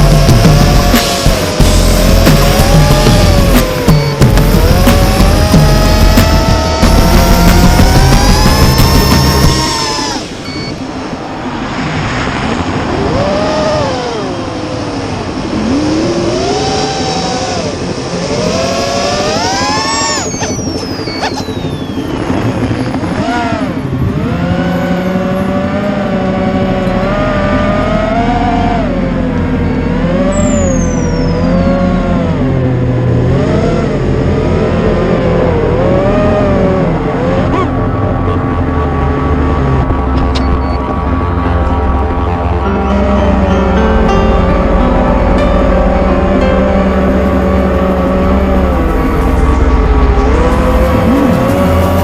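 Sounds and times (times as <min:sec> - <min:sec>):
quadcopter motors whining: 0:00.0 - 0:11.0, 0:12.9 - 0:32.5.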